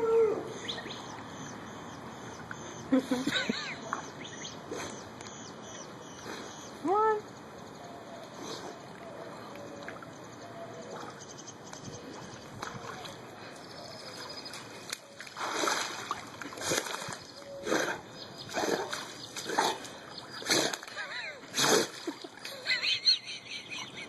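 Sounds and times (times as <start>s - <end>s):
low water noise: 0.0s - 24.0s
dog splashing in water: 14.2s - 17.9s, 18.5s - 21.0s.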